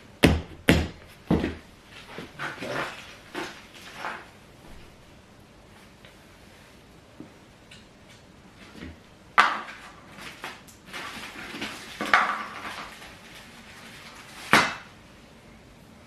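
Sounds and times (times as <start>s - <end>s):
chair parts knocking and clattering: 0.2s - 4.3s.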